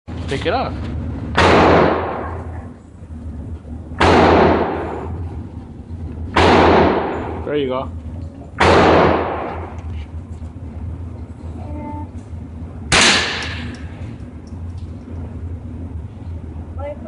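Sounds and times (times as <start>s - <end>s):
rifle shots with echo: 1.4s - 2.4s, 4.0s - 5.0s, 6.3s - 7.4s, 8.6s - 9.7s, 12.9s - 13.7s.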